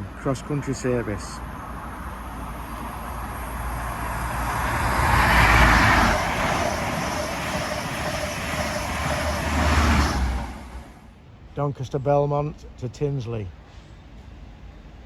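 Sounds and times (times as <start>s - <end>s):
diesel engine hum: 0.0s - 11.1s
train rushing roar: 0.0s - 11.1s.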